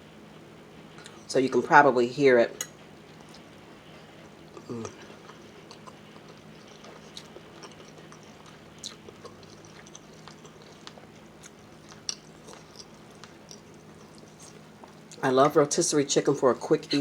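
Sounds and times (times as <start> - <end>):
chewing and biting: 4.5 - 15.2.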